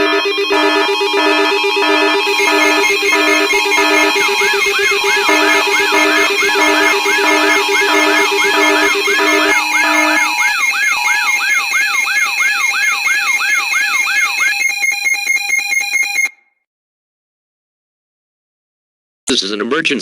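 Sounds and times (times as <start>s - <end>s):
rising electronic whoops: 0.0s - 14.8s
rapid pulsing alarm tone: 0.0s - 16.4s
steady and beeping alarm tones: 0.0s - 16.4s.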